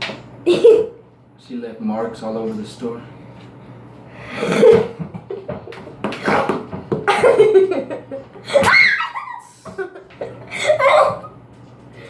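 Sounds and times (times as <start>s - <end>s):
children laughing and mouth noises: 7.1s - 11.4s.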